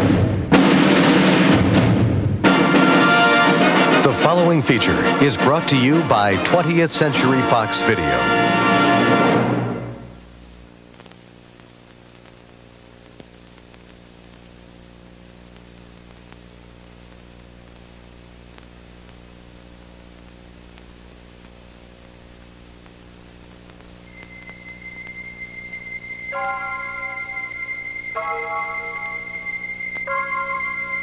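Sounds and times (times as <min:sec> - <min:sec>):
tape hiss: 0:00.0 - 0:31.0
steady electrical hum: 0:03.2 - 0:31.0
faint high steady tone: 0:24.0 - 0:31.0.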